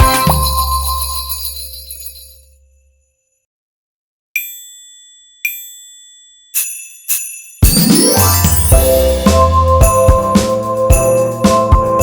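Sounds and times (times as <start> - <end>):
bright bell dings: 0.0 - 2.6, 4.4 - 10.3.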